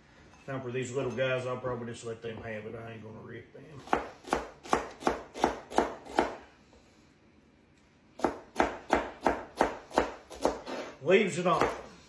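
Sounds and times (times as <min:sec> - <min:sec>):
knife chopping vegetables on board: 0:03.8 - 0:06.4, 0:08.2 - 0:12.0.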